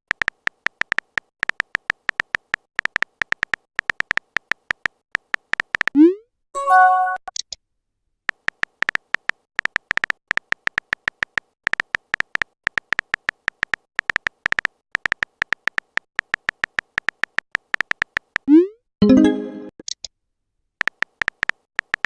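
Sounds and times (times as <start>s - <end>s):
phone keyboard typing taps: 0.1s - 6.0s, 8.3s - 18.5s, 20.8s - 22.0s.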